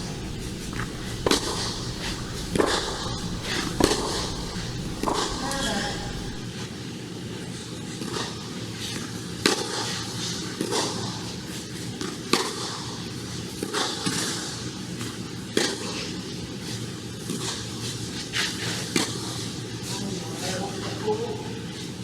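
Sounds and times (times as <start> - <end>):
tennis ball bouncing: 0.0 - 6.4
tennis ball struck by racket: 0.0 - 6.4
outdoor background noise: 0.0 - 6.5.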